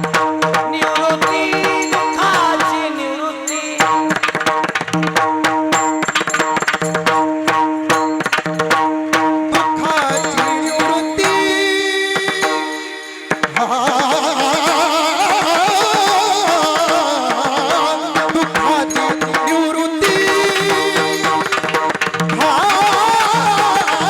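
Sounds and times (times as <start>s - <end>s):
mridang drumming: 0.0s - 24.0s
person singing ornamented phrase: 0.7s - 4.0s, 9.9s - 24.0s.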